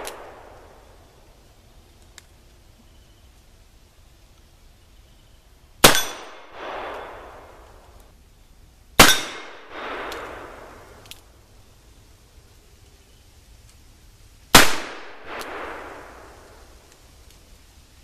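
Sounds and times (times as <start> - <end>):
gunshot echo: 5.8 - 7.6, 9.0 - 11.0, 14.6 - 16.4.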